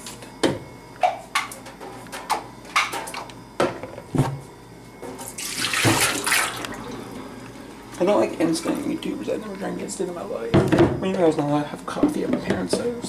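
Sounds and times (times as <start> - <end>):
thermal carafe clicking and knocking: 12.0 - 12.9.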